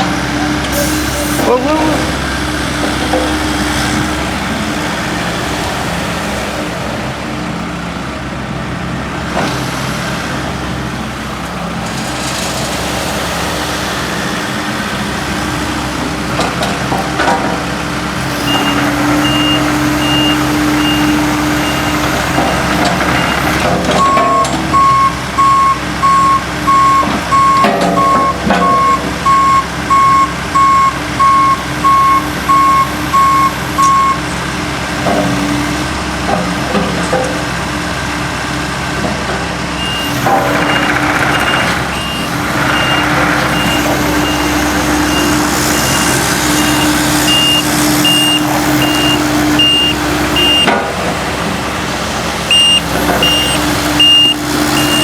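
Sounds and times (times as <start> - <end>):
excavator diesel engine running: 0.0 - 55.0
travel alarm beeping: 24.0 - 34.2, 41.5 - 44.5, 46.7 - 50.7, 52.5 - 55.0.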